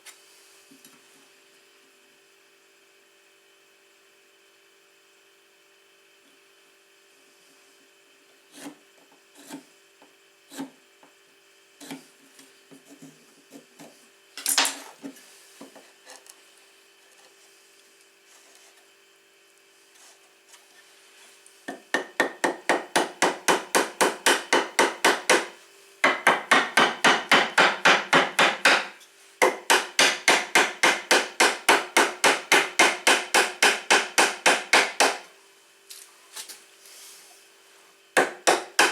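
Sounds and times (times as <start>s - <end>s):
rapid strikes on wood: 21.7s - 35.3s, 38.2s - 38.9s.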